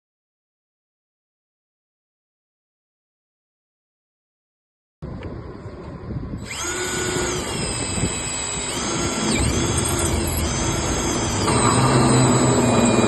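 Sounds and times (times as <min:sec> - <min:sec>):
power drill whining: 0:06.4 - 0:13.0.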